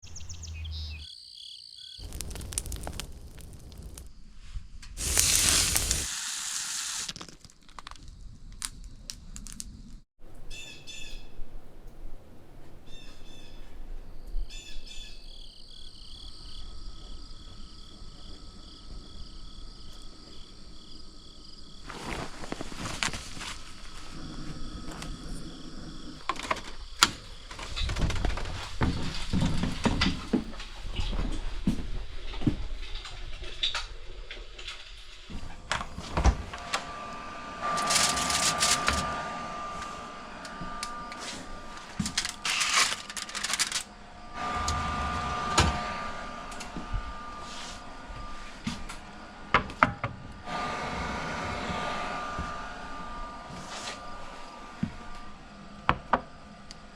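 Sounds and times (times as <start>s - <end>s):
hissing: 2.0s - 4.2s, 4.9s - 7.5s, 35.3s - 49.5s
utensils and containers clattering: 41.3s - 43.9s.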